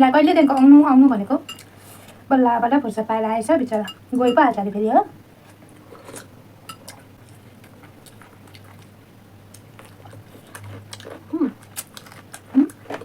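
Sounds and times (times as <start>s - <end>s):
soft chewing: 5.4s - 13.0s.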